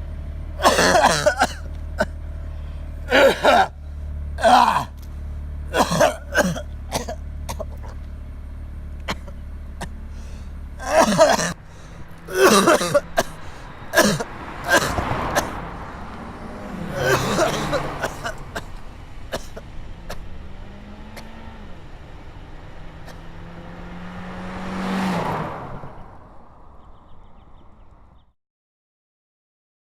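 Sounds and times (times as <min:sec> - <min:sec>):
low engine rumble: 0:00.0 - 0:28.3
loud coughing bursts: 0:00.6 - 0:02.2, 0:03.0 - 0:03.8, 0:04.4 - 0:05.0, 0:05.7 - 0:08.0, 0:09.0 - 0:15.8, 0:16.6 - 0:20.4, 0:23.0 - 0:23.3.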